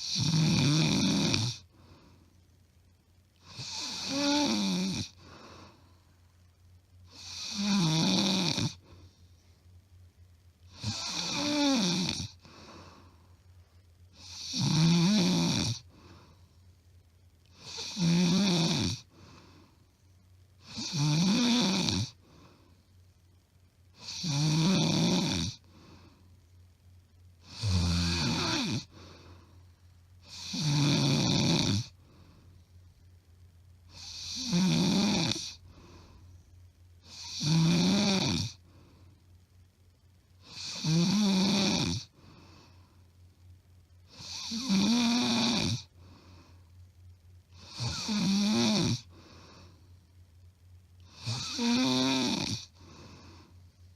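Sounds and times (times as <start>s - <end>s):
woman snoring: 0.0s - 1.7s, 3.4s - 5.8s, 7.1s - 8.8s, 10.7s - 13.1s, 14.1s - 15.9s, 17.5s - 19.1s, 20.6s - 22.2s, 24.0s - 25.7s, 27.4s - 29.2s, 30.2s - 32.0s, 33.9s - 36.2s, 37.0s - 38.6s, 40.4s - 42.4s, 44.1s - 46.0s, 47.6s - 49.7s, 51.0s - 53.6s.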